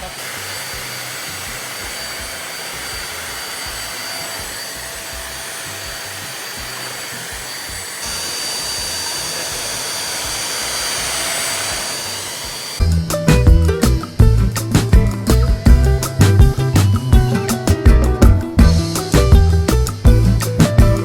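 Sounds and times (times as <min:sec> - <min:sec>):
vacuum cleaner running: 0:00.0 - 0:12.9.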